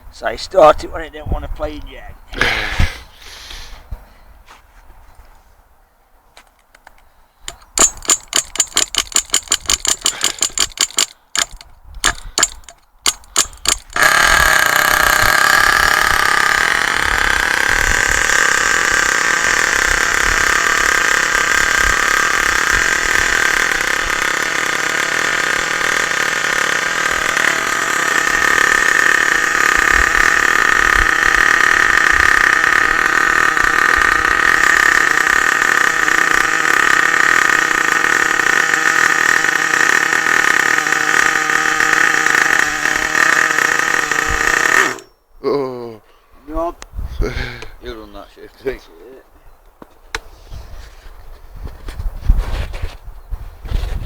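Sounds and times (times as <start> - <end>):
small engine high-pitched buzz: 7.5 - 45.2.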